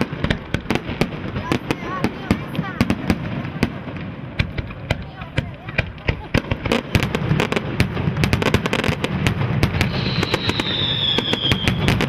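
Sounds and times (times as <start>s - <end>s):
firework bangs and crackles: 0.0s - 12.0s
descending firework whistle: 8.2s - 12.0s.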